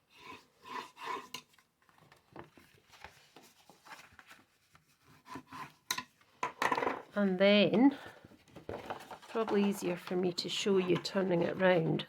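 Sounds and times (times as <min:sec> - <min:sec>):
cardstock rustling: 0:01.8 - 0:05.5.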